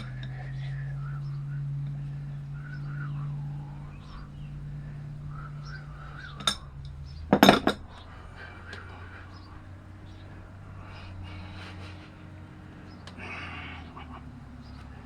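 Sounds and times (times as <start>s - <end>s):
low hum: 0.0s - 15.0s
metal tools clinking: 6.3s - 8.1s.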